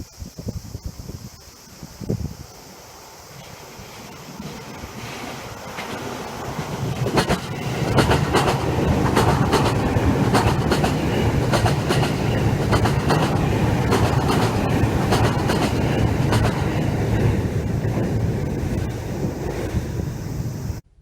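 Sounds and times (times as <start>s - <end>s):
train rumbling on track: 1.8s - 20.8s
wheels clicking over rail joints: 4.0s - 20.8s.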